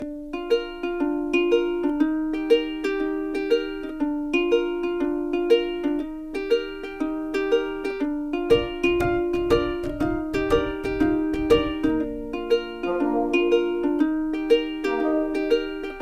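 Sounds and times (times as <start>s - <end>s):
plucked string instrumental tune: 0.0s - 16.0s
low bass part: 8.6s - 13.9s.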